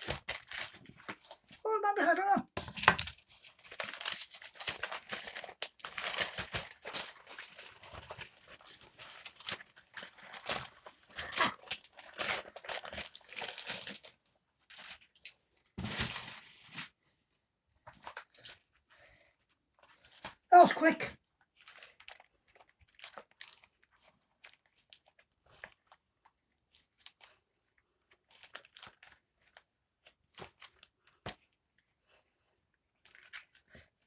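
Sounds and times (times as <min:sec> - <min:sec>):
packaging crinkling and tearing: 0:00.0 - 0:02.0, 0:02.6 - 0:15.2, 0:21.6 - 0:23.8.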